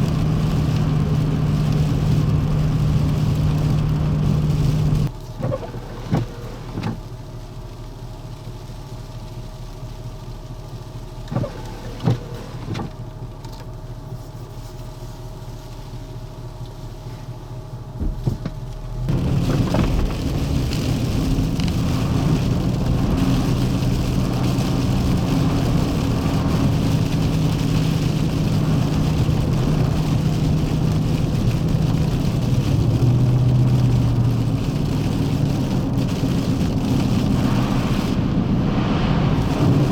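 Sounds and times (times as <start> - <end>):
road noise: 0.0 - 7.8, 10.2 - 39.9
vehicle engine running: 0.0 - 39.9.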